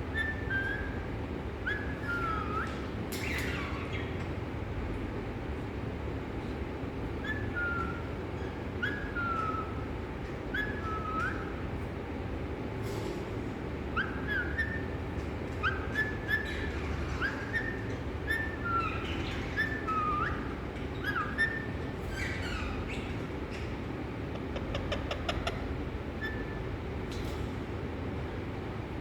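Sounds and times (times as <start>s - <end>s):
parrot whistling: 0.1s - 1.0s, 1.6s - 2.8s, 7.2s - 9.8s, 10.5s - 11.6s, 13.9s - 15.0s, 15.6s - 23.1s, 26.2s - 26.6s.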